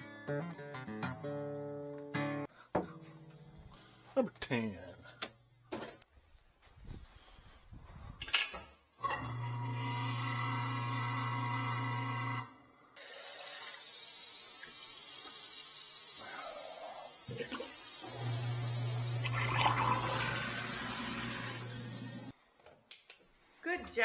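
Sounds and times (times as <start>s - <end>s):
garbage disposal motor hum: 9.0s - 12.8s, 16.2s - 22.3s
tap water running into sink: 17.3s - 22.3s.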